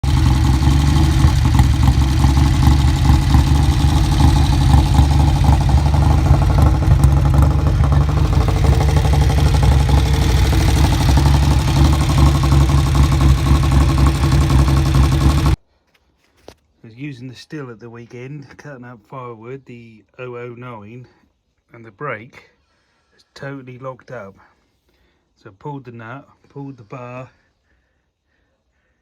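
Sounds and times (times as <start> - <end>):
chainsaw engine running: 0.0 - 15.6.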